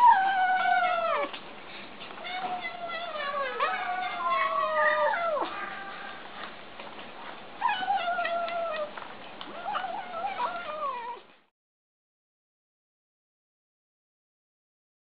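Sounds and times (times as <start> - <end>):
kittens mewing: 2.2 - 6.4, 7.6 - 11.3.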